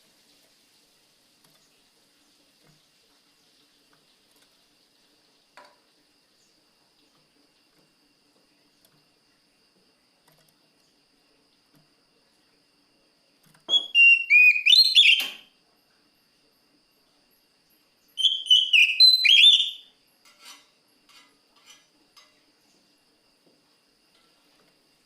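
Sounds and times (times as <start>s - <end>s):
faint ticks: 1.4s - 1.8s, 2.5s - 4.8s, 5.5s - 12.7s
bird singing whistled phrases: 13.7s - 15.5s, 18.2s - 19.9s.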